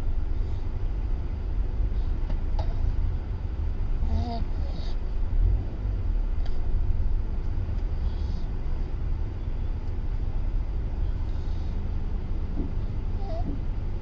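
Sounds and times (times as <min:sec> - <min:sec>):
car road rumble: 0:00.0 - 0:14.0
baby snoring: 0:04.0 - 0:05.0, 0:13.2 - 0:13.5.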